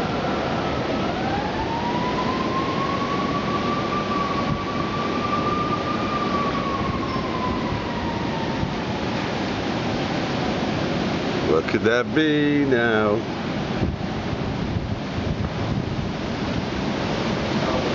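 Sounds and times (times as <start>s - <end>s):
siren wailing: 0.0s - 10.9s
storm wind rushing: 0.0s - 11.6s, 13.2s - 17.9s.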